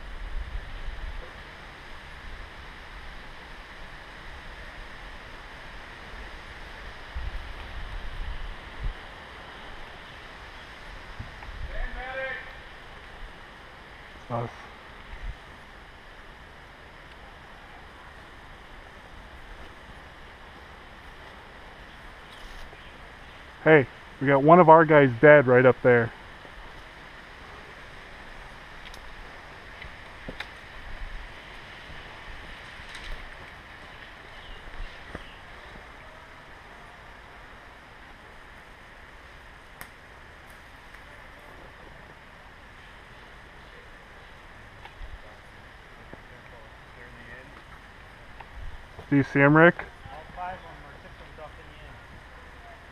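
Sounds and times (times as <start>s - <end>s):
wind on microphone: 6.8s - 9.4s.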